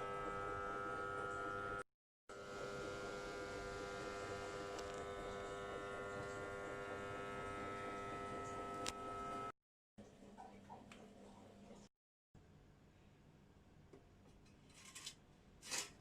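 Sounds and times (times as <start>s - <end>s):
electric motor humming: 0.0s - 9.5s.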